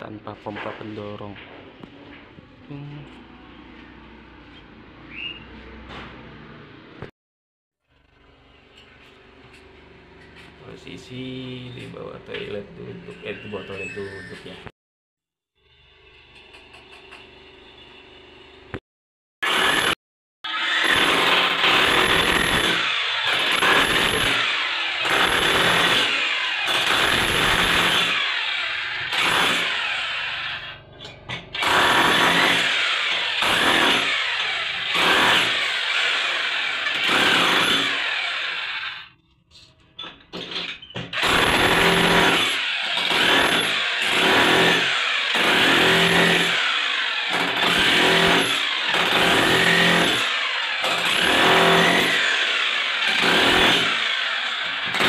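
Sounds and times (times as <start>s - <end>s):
electric chipping hammer on tiles: 19.4s - 30.8s, 31.6s - 39.1s, 41.1s - 55.0s.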